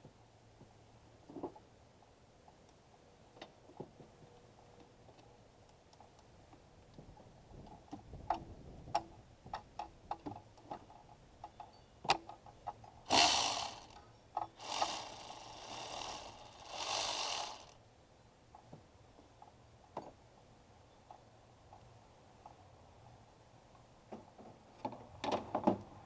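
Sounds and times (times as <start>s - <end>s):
electric ratchet running: 13.1s - 14.0s, 14.6s - 17.8s.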